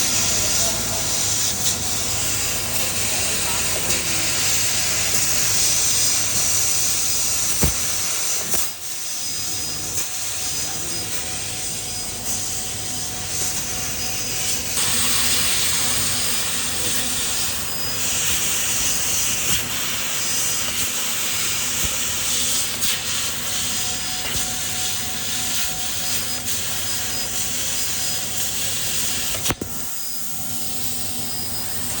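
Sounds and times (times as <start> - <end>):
metal-cutting machine hissing: 0.0 - 32.0
sharp click: 29.3 - 29.8.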